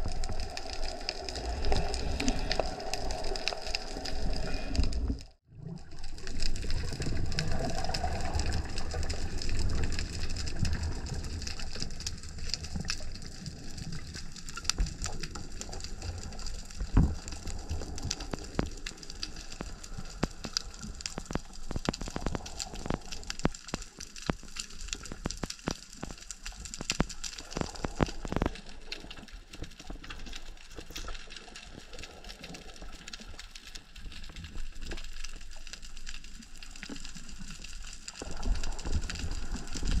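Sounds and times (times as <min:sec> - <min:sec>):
dense crackle of small clicks: 0:00.0 - 0:40.0
underwater rush of water: 0:00.0 - 0:40.0.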